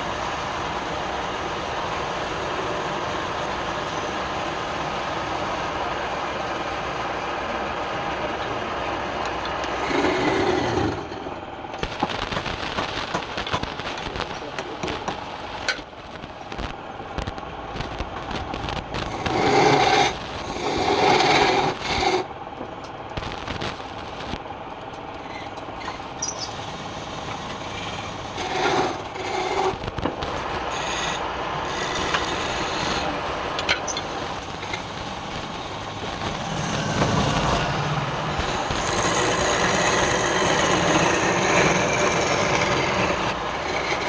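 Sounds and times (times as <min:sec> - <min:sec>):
lathe pitched whine: 0:00.0 - 0:44.0
wood lathe rasping: 0:09.7 - 0:10.8, 0:19.1 - 0:22.3, 0:26.8 - 0:35.3, 0:35.9 - 0:44.0.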